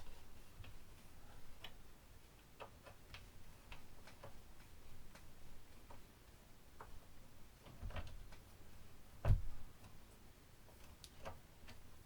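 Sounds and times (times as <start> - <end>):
light clicks and taps on screws: 0.1 - 8.5
dull heavy thump: 9.2 - 9.6.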